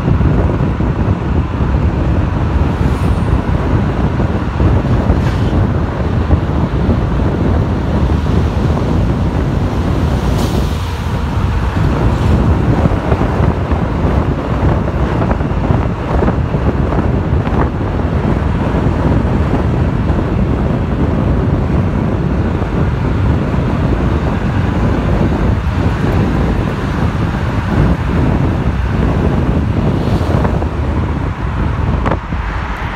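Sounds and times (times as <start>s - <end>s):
car road rumble: 0.0s - 32.9s
wind noise on microphone: 0.0s - 32.9s.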